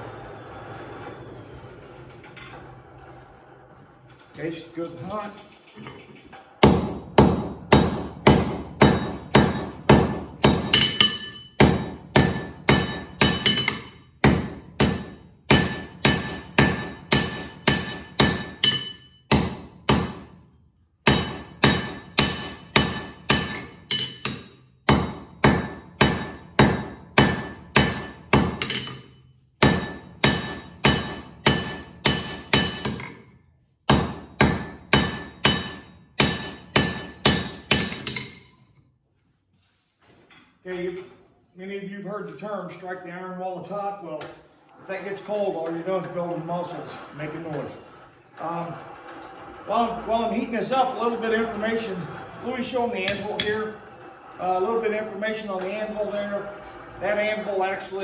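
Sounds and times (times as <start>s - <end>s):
hammer striking steel on anvil: 6.6s - 20.4s, 21.0s - 33.2s, 33.9s - 38.8s, 53.0s - 53.8s.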